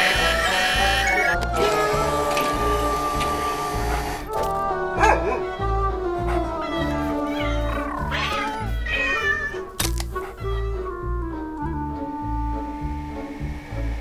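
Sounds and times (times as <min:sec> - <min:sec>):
background music with steady beat: 0:00.0 - 0:14.0
cat meowing: 0:06.6 - 0:09.8.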